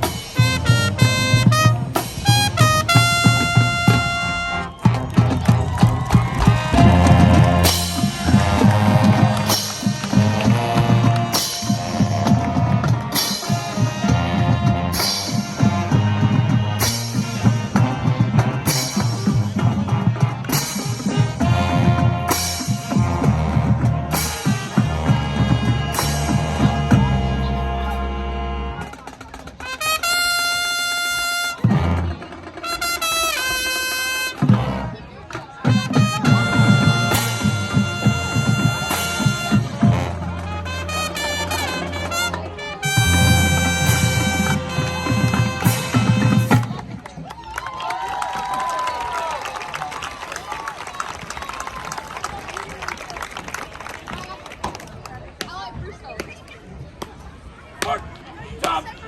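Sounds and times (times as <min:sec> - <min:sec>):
brass chords: 0:00.0 - 0:47.0
marching band playing: 0:00.0 - 0:54.6.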